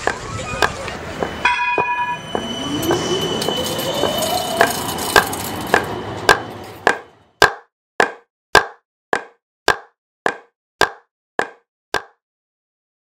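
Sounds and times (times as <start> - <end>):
electric rail vehicle motor whine: 0.0 - 7.2
street noise: 0.0 - 7.4
sharp knocks: 5.8 - 12.2.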